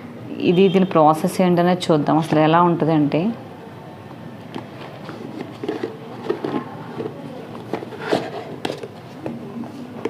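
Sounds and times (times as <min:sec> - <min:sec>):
plastic handling clicks and knocks: 0:04.5 - 0:09.4.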